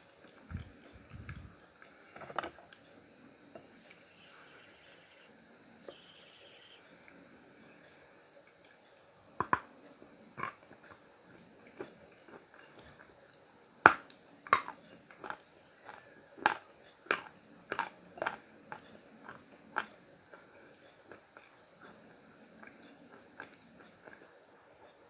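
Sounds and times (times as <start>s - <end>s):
chalk crunching while chewed: 14.5s - 24.3s.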